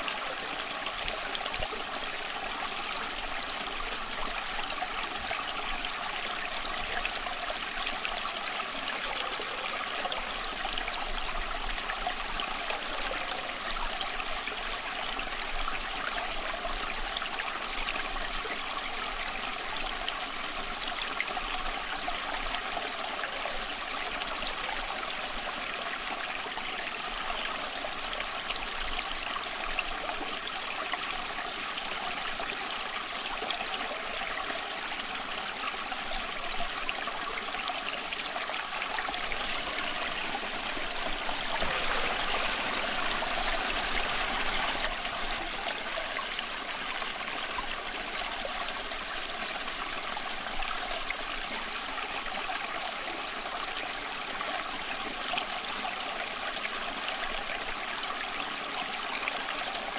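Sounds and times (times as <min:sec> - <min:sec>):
stream trickling: 0:00.0 - 0:59.9.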